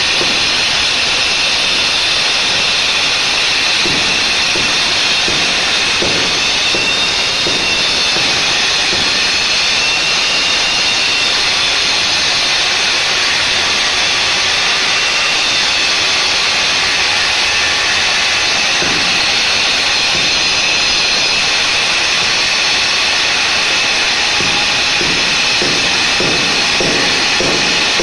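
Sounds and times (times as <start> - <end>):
wall chaser high-pitched whine: 0.0 - 28.0.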